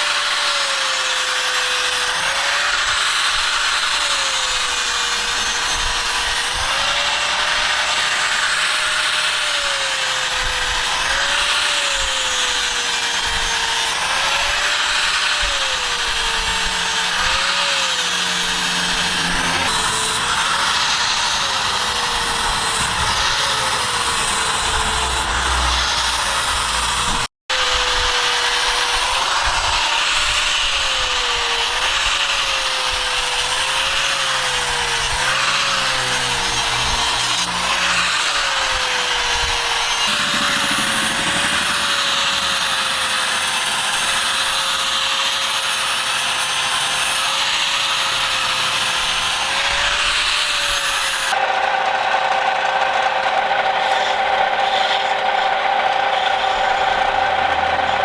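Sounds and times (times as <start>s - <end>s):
electric power tool running: 0.0s - 58.0s
steady machine sound: 15.8s - 27.3s, 36.0s - 46.7s.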